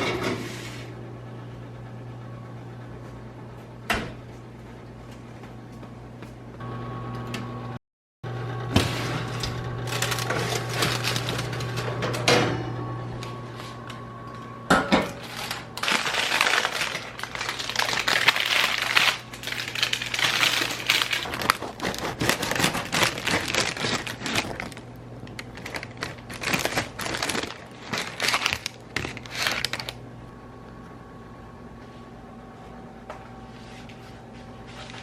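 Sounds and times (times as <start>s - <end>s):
objects clattering and rustling: 8.8s - 12.6s.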